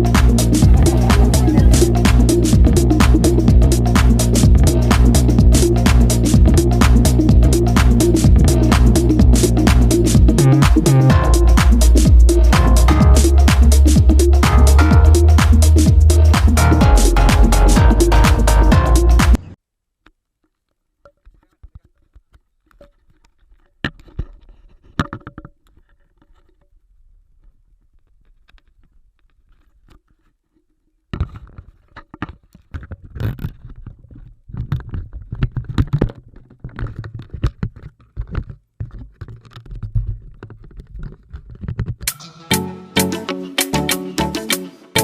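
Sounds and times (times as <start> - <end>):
low rumble: 0.0 - 19.4.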